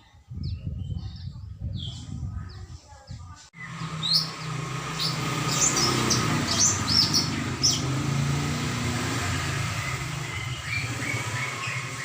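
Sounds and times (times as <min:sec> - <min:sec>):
bird chirping: 0:03.6 - 0:12.0.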